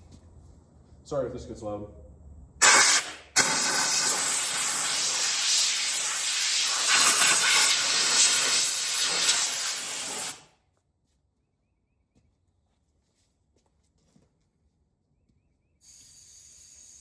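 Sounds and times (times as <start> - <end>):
compressed air blow gun hissing: 2.6 - 10.5, 15.8 - 17.0.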